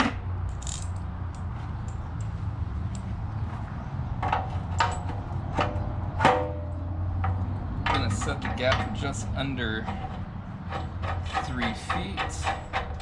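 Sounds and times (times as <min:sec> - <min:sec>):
metal hardware clinking on frame: 0:04.3 - 0:06.6, 0:07.2 - 0:13.0.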